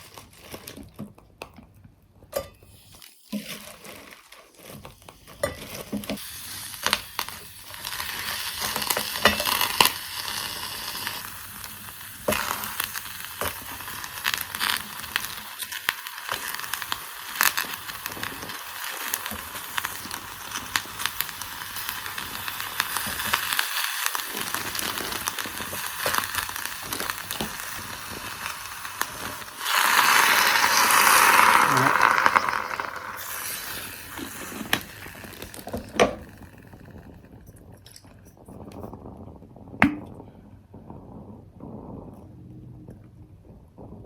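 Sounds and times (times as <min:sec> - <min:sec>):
crackling hiss of cooking: 0:00.0 - 0:44.0
rushing hiss: 0:23.4 - 0:35.9.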